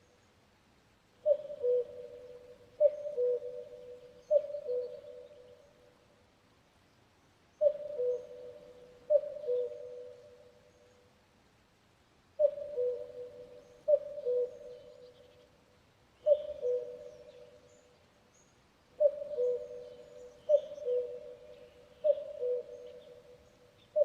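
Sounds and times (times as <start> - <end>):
cuckoo calling: 1.2 - 5.6, 7.6 - 10.5, 12.4 - 15.4, 16.2 - 17.8, 19.0 - 24.0.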